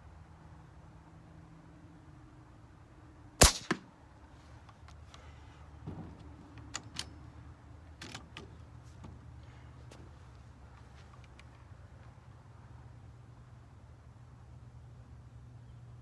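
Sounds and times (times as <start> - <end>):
air rifle shot cracks: 3.4 - 3.9.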